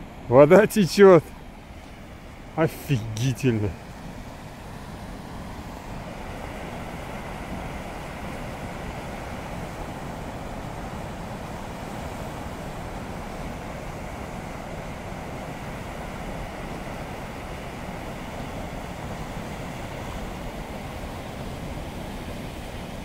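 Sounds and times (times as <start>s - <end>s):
waterfall rushing: 2.6s - 3.7s.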